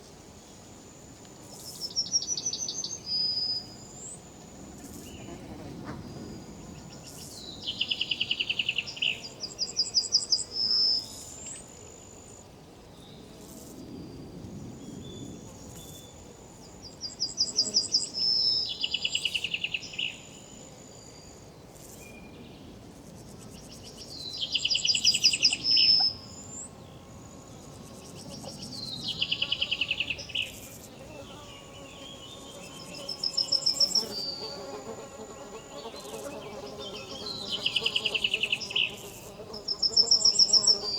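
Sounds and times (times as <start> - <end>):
insect buzz: 23.4 - 40.9.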